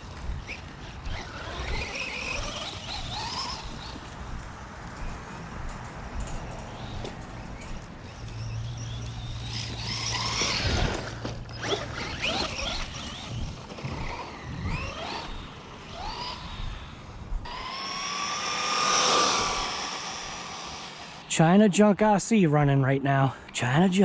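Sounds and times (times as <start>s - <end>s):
electric toy car motor whining: 0.0s - 4.2s, 7.7s - 21.3s.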